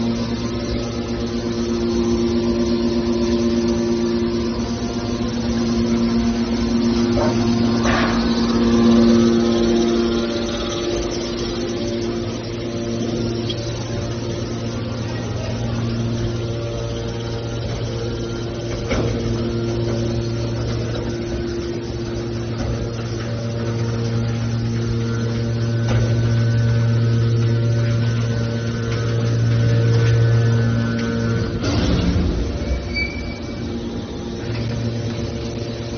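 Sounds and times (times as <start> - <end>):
can baler motor humming: 0.0 - 35.9.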